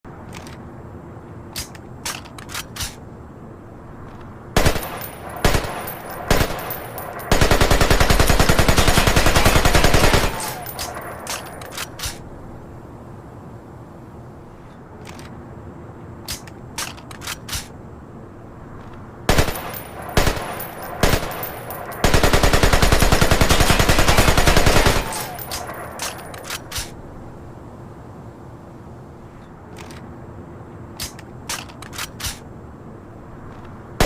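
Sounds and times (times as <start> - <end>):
full-automatic gunfire burst: 4.6 - 11.6, 19.3 - 26.3
rifle gunshots: 4.6 - 12.0, 19.3 - 26.7.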